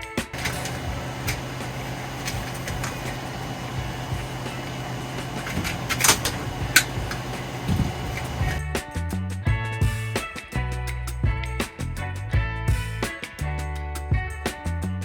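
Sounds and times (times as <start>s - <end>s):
low mechanical hum with hiss: 0.4s - 8.6s.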